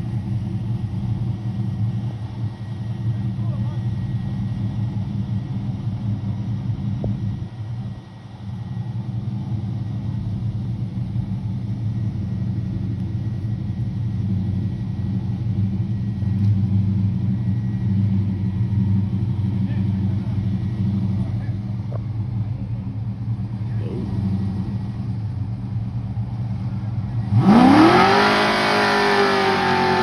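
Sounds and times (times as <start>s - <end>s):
car engine idling: 0.0s - 30.0s.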